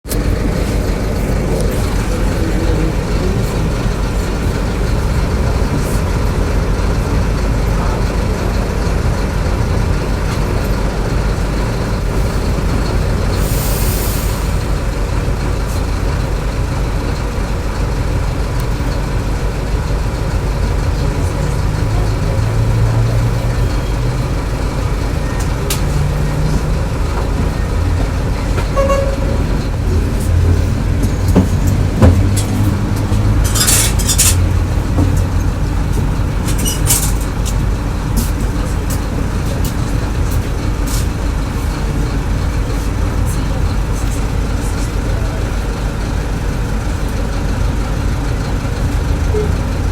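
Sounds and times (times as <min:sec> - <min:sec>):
bus engine rumbling: 0:00.0 - 0:49.9
compressed air hiss: 0:13.4 - 0:14.6.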